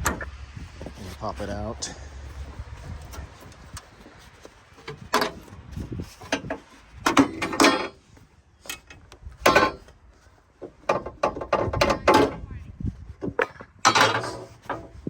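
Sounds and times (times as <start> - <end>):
metal tools clunking and rattling: 0.0 - 0.3, 1.8 - 12.5, 13.2 - 15.0.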